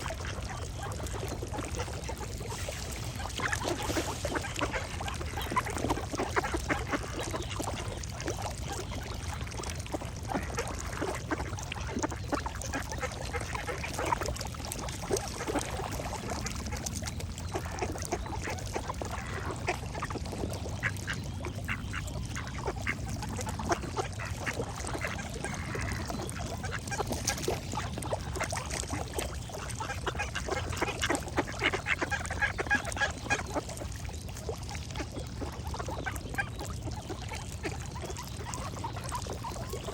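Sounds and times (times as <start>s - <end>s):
ducks quacking: 1.6s - 8.4s, 17.4s - 34.0s.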